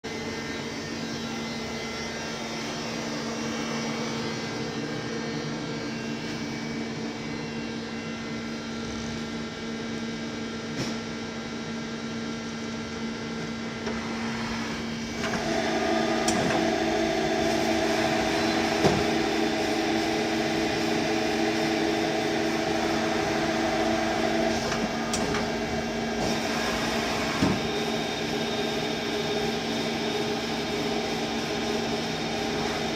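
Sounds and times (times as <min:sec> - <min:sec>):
lathe motor hum: 0:14.1 - 0:32.9.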